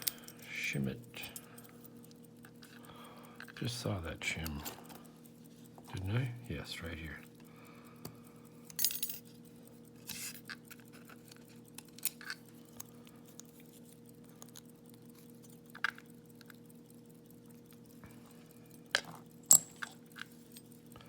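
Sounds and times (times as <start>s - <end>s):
faint steady hum: 0.0s - 21.0s
padlock metal clicks: 10.1s - 13.5s.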